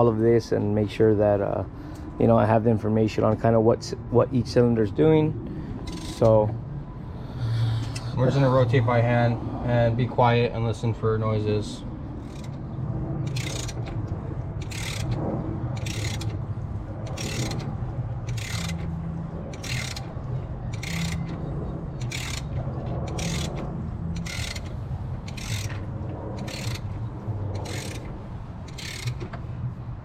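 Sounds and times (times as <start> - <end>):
steady low hum: 0.0 - 30.0
ratchet wrench clicking: 5.9 - 6.3, 12.2 - 12.6, 13.3 - 13.9, 14.6 - 15.2, 15.8 - 16.4, 17.0 - 18.9, 19.5 - 21.4, 22.0 - 29.4.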